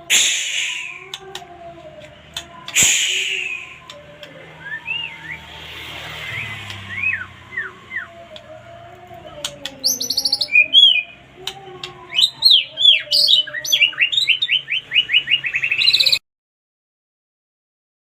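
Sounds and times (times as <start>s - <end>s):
bird singing whistled phrases: 0.1s - 1.2s, 2.7s - 4.0s, 4.6s - 5.5s, 6.3s - 8.4s, 9.7s - 11.2s, 12.1s - 16.2s.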